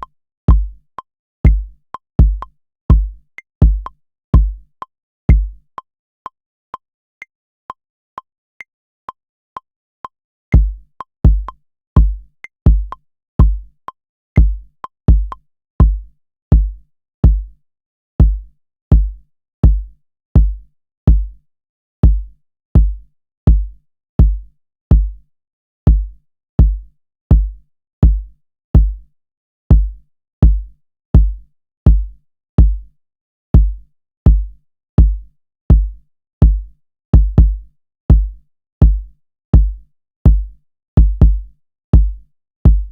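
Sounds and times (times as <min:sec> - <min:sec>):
electronic kick drum: 0:00.0 - 0:00.8, 0:01.4 - 0:04.7, 0:05.3 - 0:05.6, 0:10.5 - 0:13.7, 0:14.4 - 0:17.5, 0:18.2 - 0:21.4, 0:22.0 - 0:25.2, 0:25.9 - 0:29.0, 0:29.7 - 0:32.9, 0:33.6 - 0:42.9.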